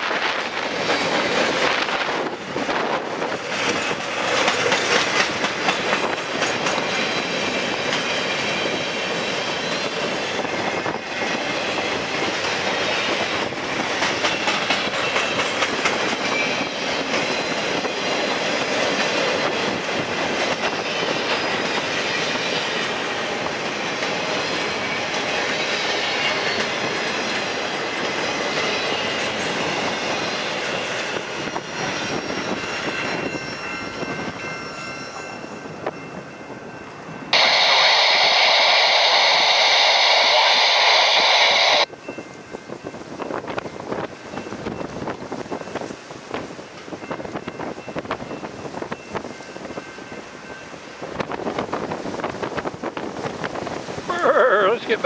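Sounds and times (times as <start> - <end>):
wheels clicking over rail joints: 0.0 - 10.1
freight train rolling past: 0.0 - 55.0.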